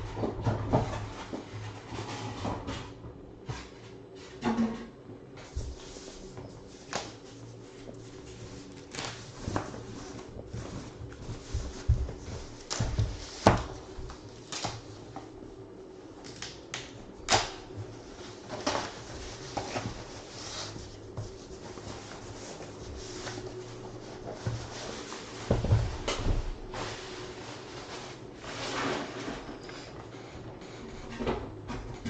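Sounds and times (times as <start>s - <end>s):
low steady hum: 0.0s - 32.0s.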